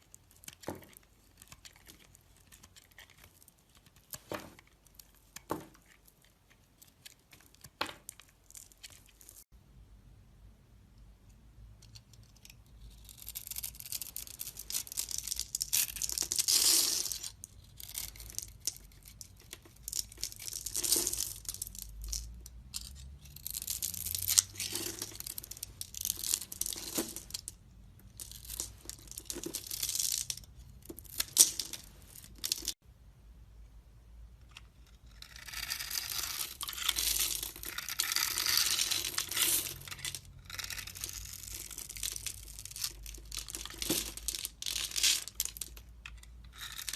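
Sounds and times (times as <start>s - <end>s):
blade cutting and scraping soap: 0.0s - 9.2s, 34.6s - 43.8s, 46.0s - 46.9s.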